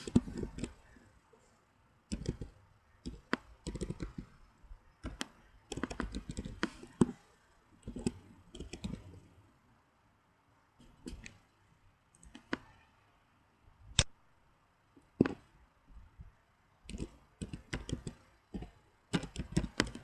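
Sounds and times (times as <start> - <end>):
computer keyboard typing: 0.0 - 0.8, 2.1 - 4.4, 5.0 - 7.2, 7.8 - 9.2, 16.9 - 20.0.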